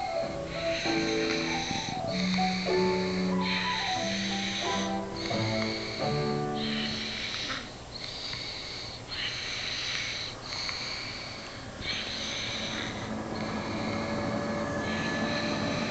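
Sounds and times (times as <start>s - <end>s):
music notes: 0.0s - 7.2s
breathy snores: 0.0s - 15.9s.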